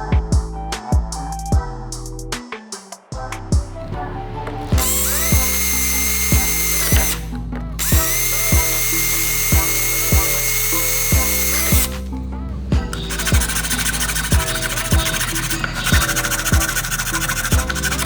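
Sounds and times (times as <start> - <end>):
music with kick-drum beat: 0.0 - 18.0
power tool motor whine: 4.8 - 12.1, 13.0 - 18.0.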